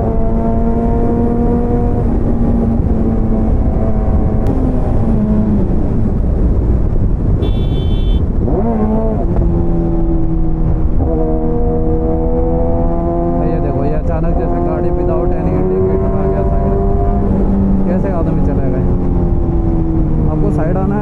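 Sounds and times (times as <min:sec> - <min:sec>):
road rumble: 0:00.0 - 0:21.0
wind noise: 0:00.0 - 0:21.0
horn honking: 0:07.4 - 0:08.3
motorcycle engine running: 0:07.4 - 0:08.3.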